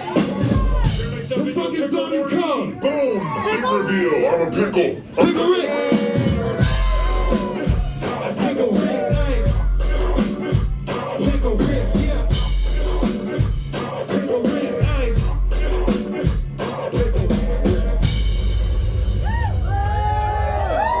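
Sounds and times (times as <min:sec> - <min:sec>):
heavy bass line: 0:00.0 - 0:01.6, 0:05.2 - 0:21.0
hip hop beat: 0:00.0 - 0:03.0, 0:04.5 - 0:18.7
vocal snippets: 0:02.7 - 0:18.3.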